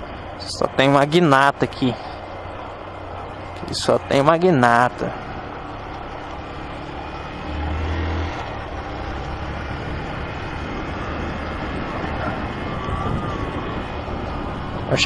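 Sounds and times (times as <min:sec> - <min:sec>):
motorcycle engine running: 0:05.0 - 0:15.0.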